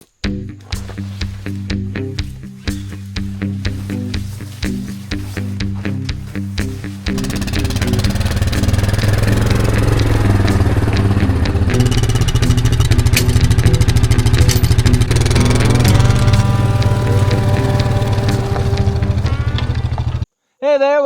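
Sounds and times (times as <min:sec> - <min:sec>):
small gasoline engine running: 0:07.1 - 0:20.2.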